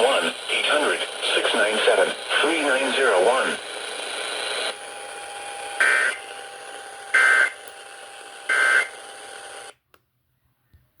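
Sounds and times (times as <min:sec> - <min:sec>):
radio hiss: 0:00.0 - 0:04.8.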